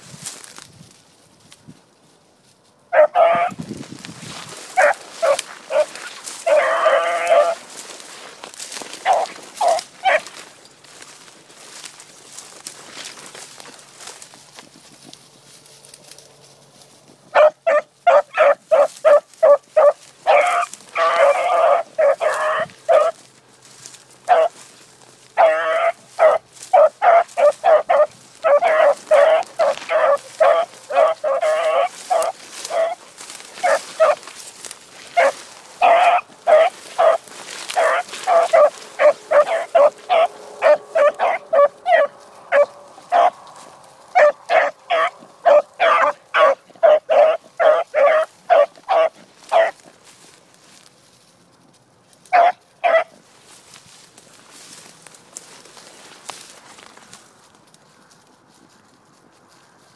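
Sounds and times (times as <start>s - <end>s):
dog barking: 2.9s - 3.6s, 4.8s - 7.6s, 9.0s - 10.3s, 17.3s - 23.2s, 24.3s - 24.6s, 25.4s - 33.0s, 33.6s - 34.2s, 35.1s - 49.8s, 52.3s - 53.2s.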